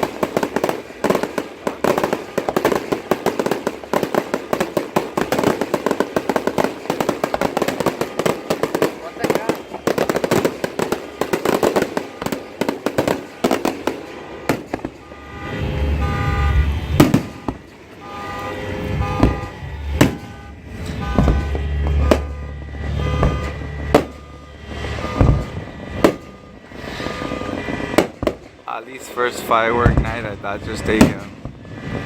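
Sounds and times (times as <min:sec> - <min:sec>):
fireworks booming: 0:00.0 - 0:32.0
fireworks crackling: 0:00.0 - 0:32.0
short steady tones: 0:14.1 - 0:28.2.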